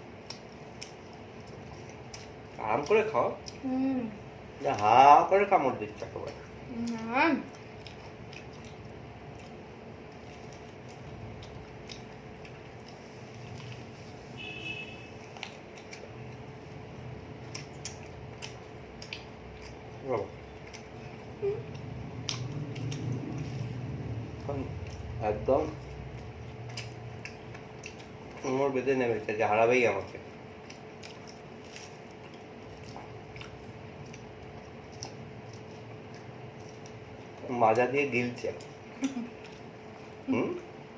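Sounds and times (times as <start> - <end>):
faint steady hum: 0.0 - 40.9
mouth chewing clicks and smacks: 0.1 - 3.6, 6.0 - 14.1, 15.2 - 28.6, 30.0 - 40.8
wet mouth clicks: 17.5 - 19.8, 21.5 - 23.4.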